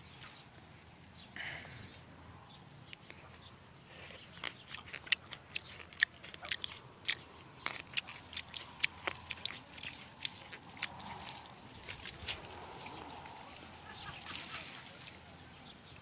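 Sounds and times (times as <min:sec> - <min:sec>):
person chewing grapes: 0:03.0 - 0:13.3.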